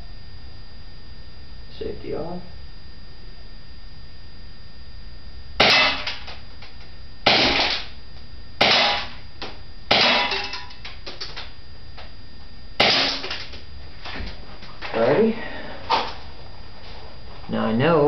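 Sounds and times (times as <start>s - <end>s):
airsoft pistol shots: 5.6s - 6.4s, 7.2s - 7.9s, 8.6s - 9.2s, 9.9s - 10.6s, 12.8s - 13.5s.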